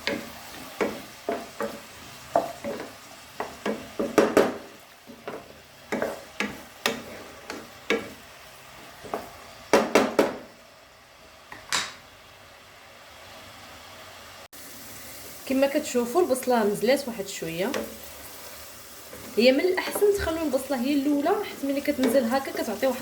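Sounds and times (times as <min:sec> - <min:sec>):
onion sizzling in oil: 0:00.0 - 0:23.0
utensil scraping and knocking pan: 0:02.4 - 0:08.2.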